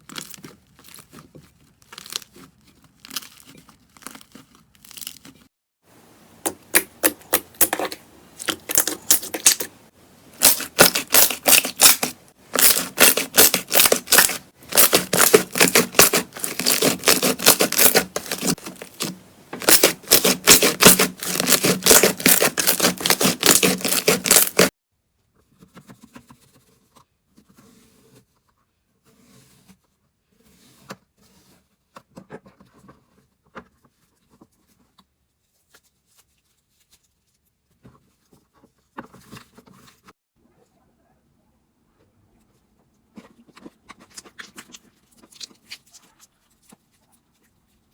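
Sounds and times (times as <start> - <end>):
slime crackling and popping: 6.4 - 9.7, 10.4 - 24.7.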